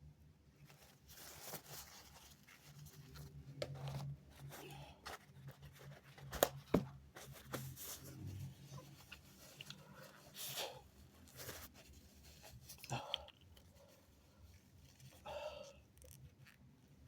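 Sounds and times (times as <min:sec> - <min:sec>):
rustling and handling noises: 0:00.4 - 0:17.0.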